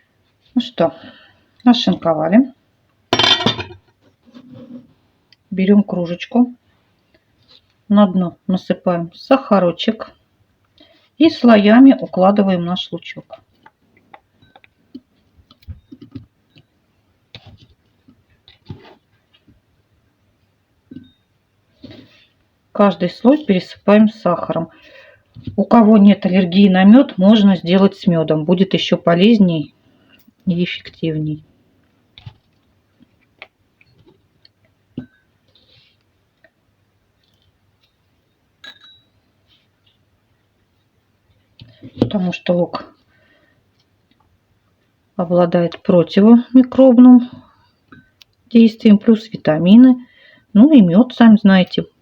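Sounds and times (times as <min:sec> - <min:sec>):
small clinks: 0:38.6 - 0:39.2.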